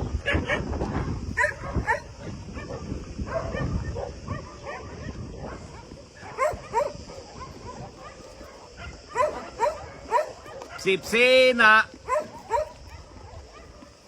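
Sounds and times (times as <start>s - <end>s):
dog yelps: 1.4s - 5.2s, 6.2s - 10.9s, 12.0s - 13.8s
dogs yipping and whining: 1.4s - 10.9s, 12.0s - 14.0s.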